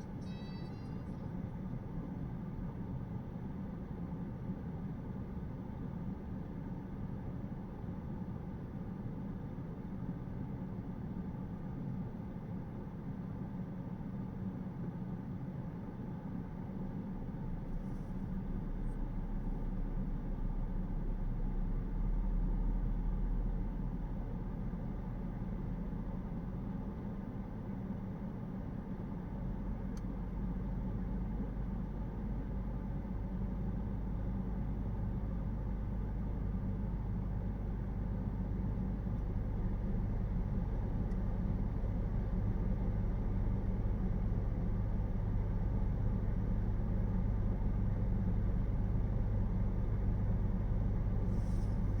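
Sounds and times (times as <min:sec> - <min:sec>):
electric car low hum: 0:16.7 - 0:52.0.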